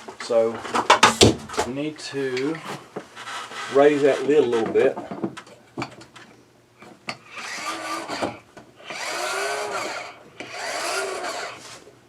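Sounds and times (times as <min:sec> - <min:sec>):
vent motor whirring: 0:00.9 - 0:01.8, 0:07.2 - 0:11.8.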